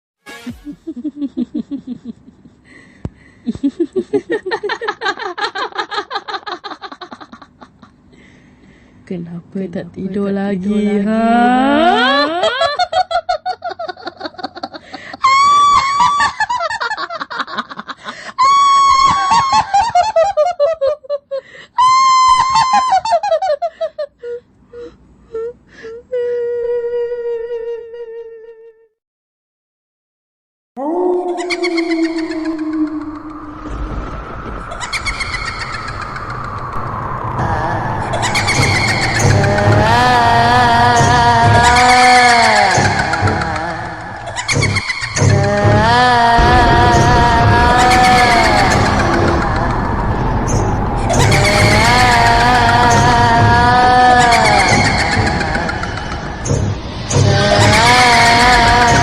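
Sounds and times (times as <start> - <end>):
person laughing ghostly cackle: 0.5 - 8.3, 10.7 - 24.9, 31.1 - 45.6, 46.2 - 59.0.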